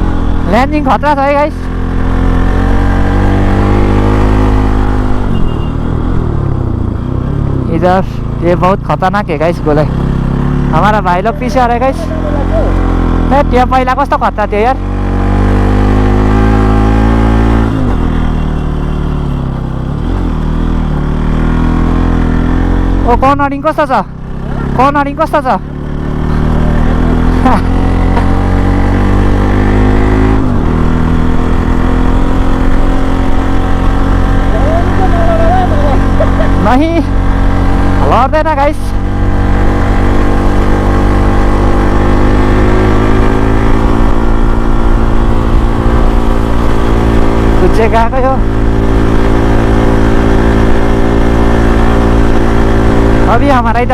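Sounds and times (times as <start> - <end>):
motorcycle engine running: 0.0 - 53.9.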